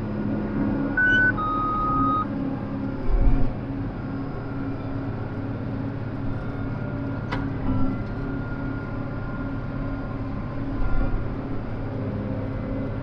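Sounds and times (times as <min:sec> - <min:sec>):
two-tone electronic beep: 0:01.0 - 0:02.3.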